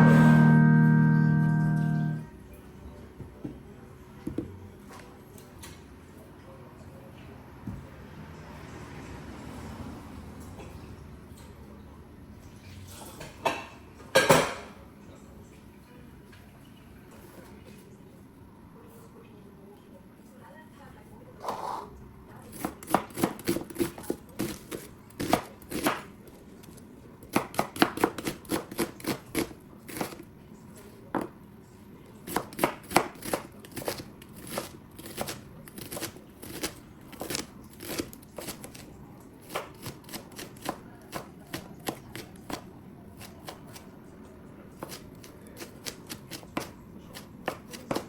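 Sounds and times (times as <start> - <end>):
knife chopping on cutting board: 22.5 - 26.1, 27.3 - 30.2, 32.3 - 38.8, 39.4 - 43.9, 44.8 - 48.0.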